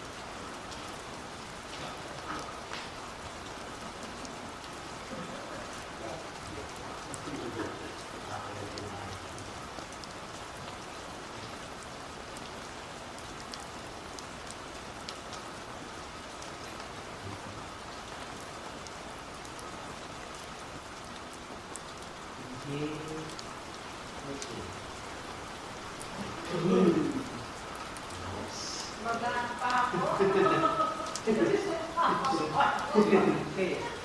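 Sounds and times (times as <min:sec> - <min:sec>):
steady hissing noise: 0:00.0 - 0:34.0.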